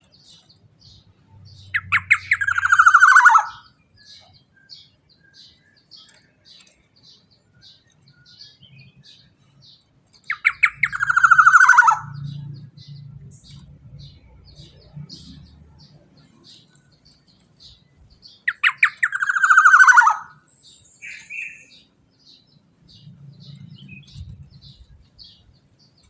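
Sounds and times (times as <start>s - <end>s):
bird calling harshly: 1.7s - 3.8s, 10.3s - 12.4s, 18.4s - 21.9s.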